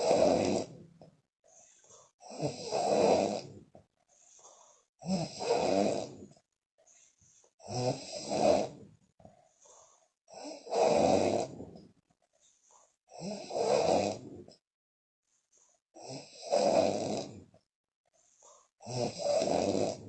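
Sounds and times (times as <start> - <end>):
woman snoring loudly: 0.0 - 1.0, 2.2 - 3.7, 5.0 - 6.3, 7.6 - 8.9, 10.3 - 11.8, 13.1 - 14.5, 16.0 - 17.4, 18.8 - 20.0
breaths: 1.0 - 2.2, 3.8 - 4.9, 6.3 - 7.6, 9.2 - 10.2, 11.7 - 13.0, 15.2 - 15.8, 18.1 - 18.8.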